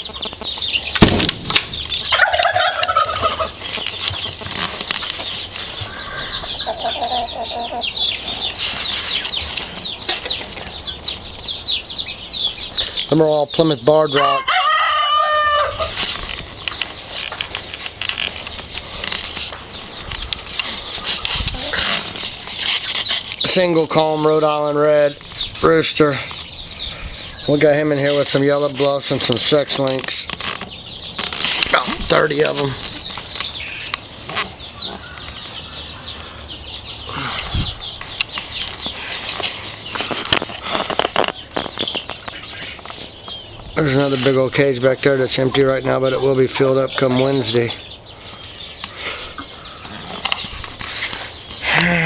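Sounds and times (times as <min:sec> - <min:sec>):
chickens scratching: 0:00.0 - 0:51.9
chickens clucking: 0:00.0 - 0:52.0
low thump: 0:01.0 - 0:02.1
rooster crow: 0:14.2 - 0:15.9.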